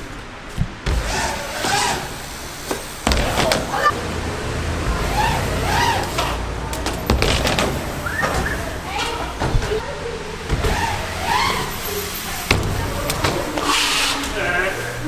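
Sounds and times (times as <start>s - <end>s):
faint voices: 0.0s - 15.0s
heavy rain hissing: 0.0s - 15.0s
sudden thud: 3.0s - 4.0s, 6.8s - 9.8s, 12.5s - 13.5s.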